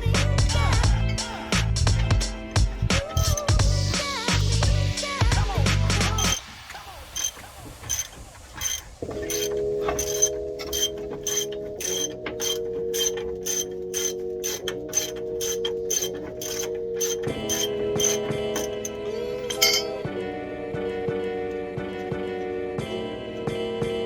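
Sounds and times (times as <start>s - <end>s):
ratchet wrench clicking: 3.1s - 3.6s, 6.2s - 6.4s, 7.2s - 20.0s.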